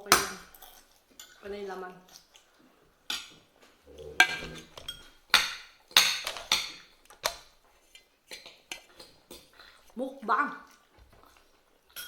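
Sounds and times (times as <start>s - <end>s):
cutlery clinking on plates: 3.1s - 9.8s.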